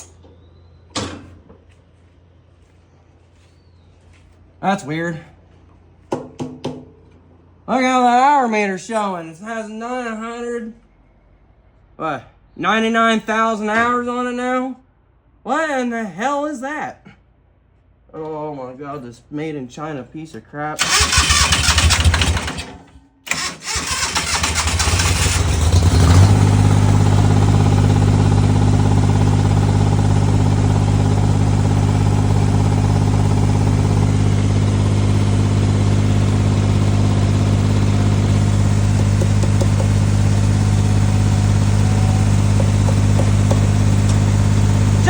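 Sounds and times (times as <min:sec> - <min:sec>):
starter cranking engine: 0:20.8 - 0:45.0
engine running steadily: 0:23.3 - 0:45.0.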